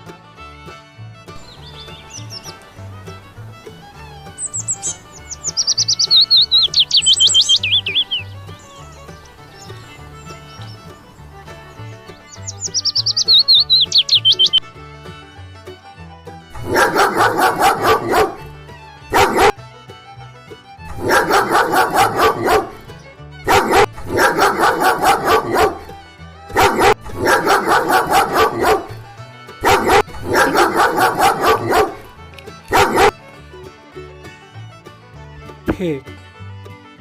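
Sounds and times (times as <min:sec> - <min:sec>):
quiet background music: 0:00.0 - 0:37.0
dog barking: 0:16.6 - 0:18.5, 0:19.1 - 0:19.6, 0:20.9 - 0:32.1, 0:32.7 - 0:33.2.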